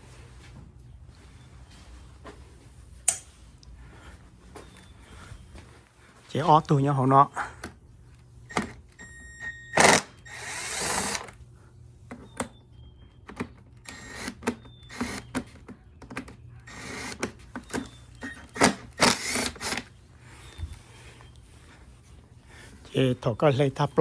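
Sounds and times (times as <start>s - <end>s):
rasping burst: 9.7s - 11.3s
tools clicking and knocking: 13.2s - 19.9s.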